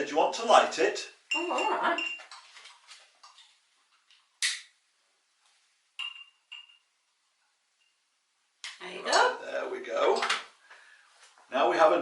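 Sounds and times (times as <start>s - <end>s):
light glass clinks: 1.3s - 2.3s, 6.0s - 6.9s.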